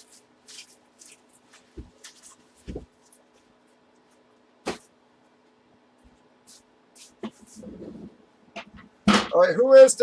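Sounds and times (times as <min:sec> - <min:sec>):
hands rustling items on table: 0:00.0 - 0:07.7.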